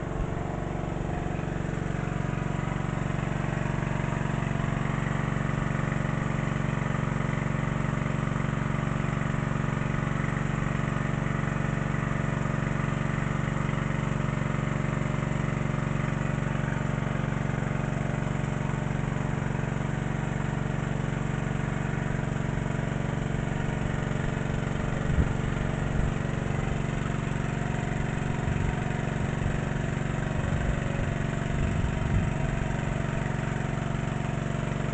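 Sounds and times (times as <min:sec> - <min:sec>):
engine-driven water pump running: 0:00.0 - 0:34.9.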